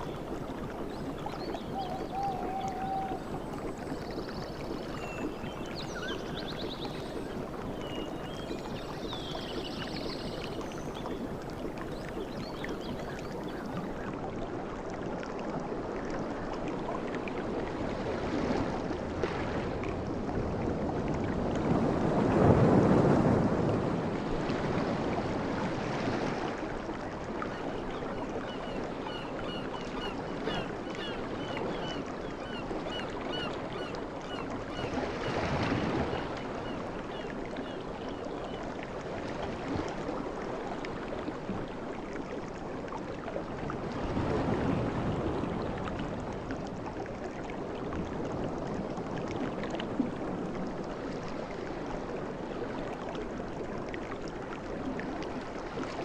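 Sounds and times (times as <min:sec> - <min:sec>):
sea waves breaking on beach: 0:00.0 - 0:03.8, 0:17.7 - 0:27.4, 0:34.8 - 0:37.0, 0:42.7 - 0:49.2.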